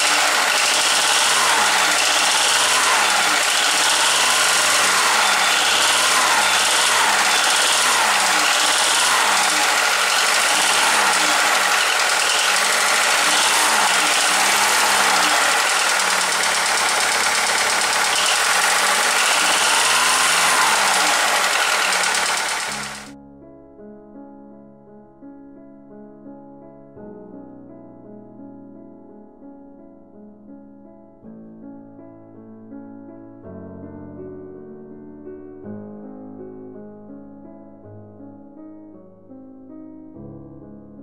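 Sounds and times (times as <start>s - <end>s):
petrol engine knocking clatter: 0.0s - 23.1s.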